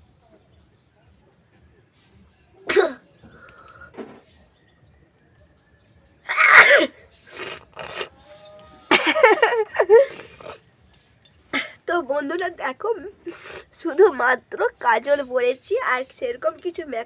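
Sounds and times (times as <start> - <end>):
woman sneezing: 2.7 - 3.0, 6.3 - 8.1.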